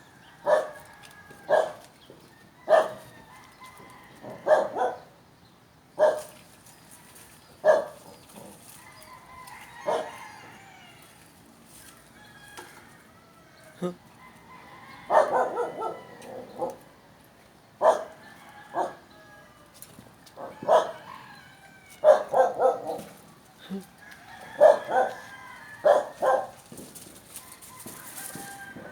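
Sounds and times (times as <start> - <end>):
dog barking: 0.4 - 0.8, 1.5 - 1.8, 2.7 - 3.0, 4.4 - 5.1, 6.0 - 6.3, 7.6 - 8.0, 9.8 - 10.2, 15.1 - 16.8, 17.8 - 19.0, 20.4 - 21.2, 22.0 - 23.2, 24.6 - 26.6.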